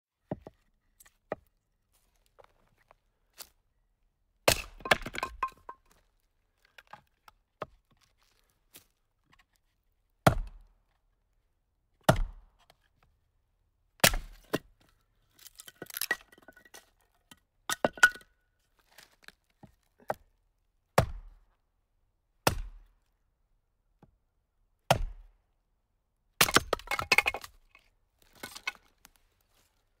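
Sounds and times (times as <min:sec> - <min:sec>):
axe striking firewood: 0:04.4 - 0:05.8, 0:10.2 - 0:10.7, 0:12.0 - 0:12.7, 0:14.0 - 0:14.7, 0:21.0 - 0:21.4, 0:22.4 - 0:22.9, 0:24.9 - 0:25.3, 0:26.4 - 0:27.6
wood cracking and clattering: 0:28.2 - 0:29.0.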